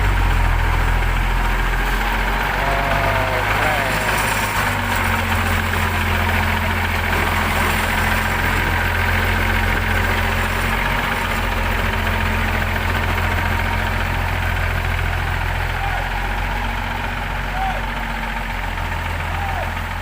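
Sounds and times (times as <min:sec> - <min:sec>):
diesel truck engine idling: 0:00.0 - 0:20.0.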